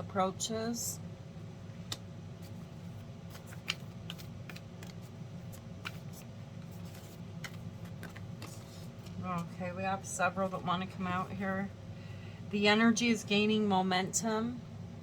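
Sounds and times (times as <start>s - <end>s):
steady low hum: 0.0s - 15.0s
cards being shuffled: 1.9s - 9.5s.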